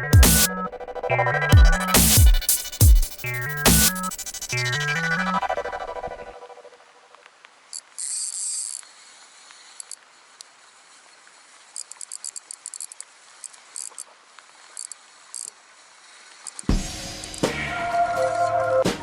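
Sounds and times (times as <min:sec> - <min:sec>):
faint outdoor hiss: 0:06.4 - 0:17.6
insects chirping: 0:07.7 - 0:16.7.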